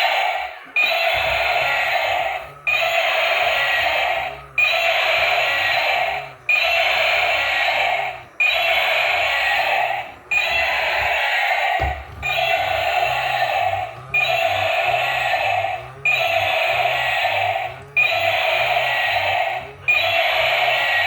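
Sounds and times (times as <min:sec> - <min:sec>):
electronic sound loop: 0:00.0 - 0:21.0.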